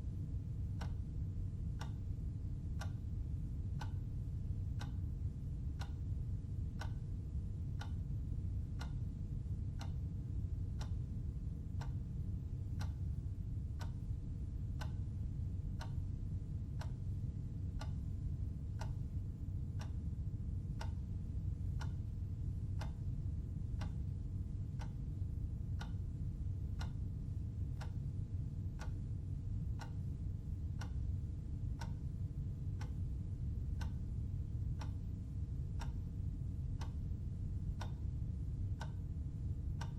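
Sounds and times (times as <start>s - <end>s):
steady low hum: 0.0s - 39.9s
timer clock ticking: 0.5s - 1.1s, 1.7s - 7.1s, 7.7s - 16.1s, 16.7s - 39.9s.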